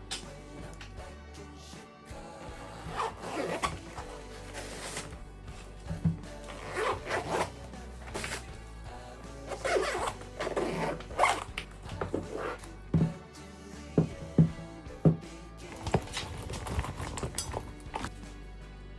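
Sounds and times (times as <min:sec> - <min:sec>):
background music: 0:00.0 - 0:18.9
boot zipper being run: 0:02.9 - 0:05.1, 0:05.9 - 0:07.5, 0:09.5 - 0:13.2.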